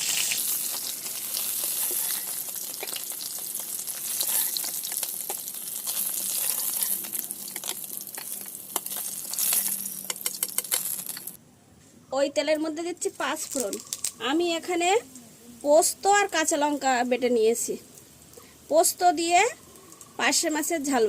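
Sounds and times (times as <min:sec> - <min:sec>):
fish sizzling in hot oil: 0:00.0 - 0:11.4.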